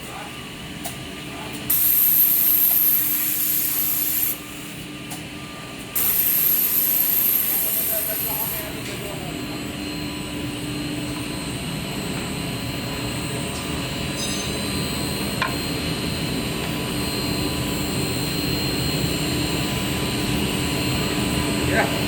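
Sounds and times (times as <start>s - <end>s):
machine hum and whir: 0.0s - 22.0s.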